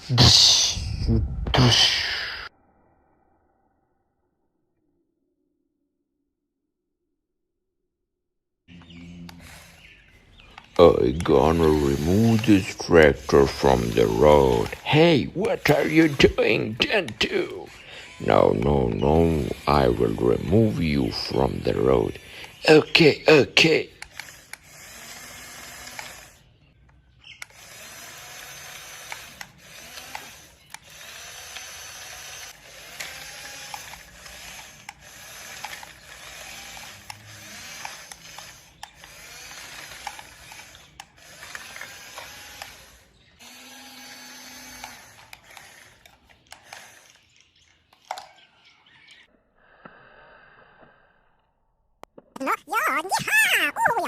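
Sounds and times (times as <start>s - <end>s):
small electric motors whirring: 8.7s - 49.3s.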